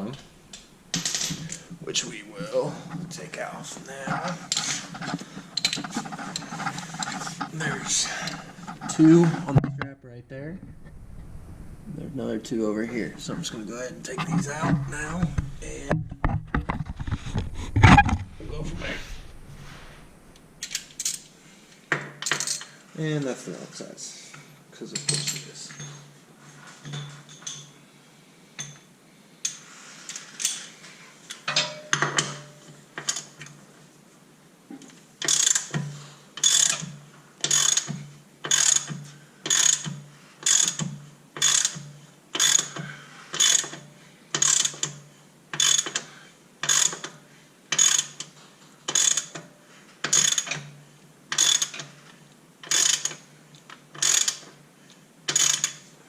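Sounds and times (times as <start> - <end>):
ratchet wrench ratcheting: 35.2 - 35.7, 36.4 - 37.9, 38.5 - 40.8, 41.4 - 41.8, 42.4 - 42.7, 43.4 - 43.8, 44.4 - 45.0, 45.6 - 46.0, 46.6 - 47.0, 47.8 - 48.2, 48.9 - 49.4, 50.1 - 50.6, 51.4 - 51.8, 52.6 - 53.2, 54.0 - 54.5, 55.3 - 55.8.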